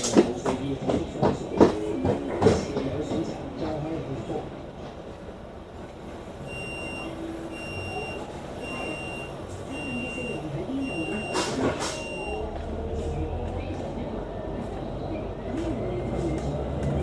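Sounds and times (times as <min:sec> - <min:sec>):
bus engine hum: 0:00.0 - 0:17.0
bus warning beeps: 0:06.4 - 0:12.7.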